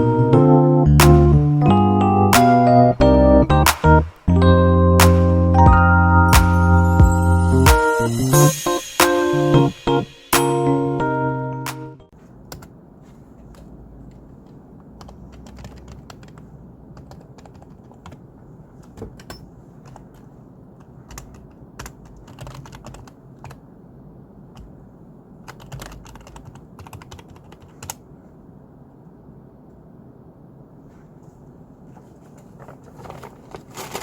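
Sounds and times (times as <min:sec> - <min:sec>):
low background noise: 0:00.0 - 0:34.0
keyboard keystrokes clicking: 0:21.1 - 0:23.6.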